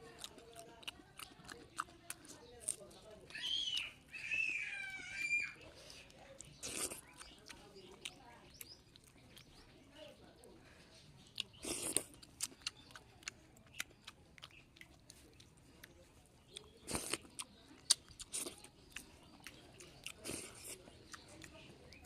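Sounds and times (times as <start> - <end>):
person chewing food: 0.0 - 3.9, 5.7 - 9.7, 11.2 - 22.0
wet mouth clicks and crunches: 0.1 - 3.0, 6.4 - 9.6, 11.3 - 22.0.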